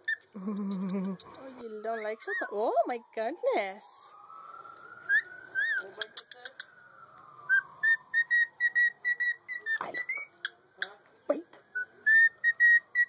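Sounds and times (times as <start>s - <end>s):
cockatiel chirps: 11.8s - 13.0s.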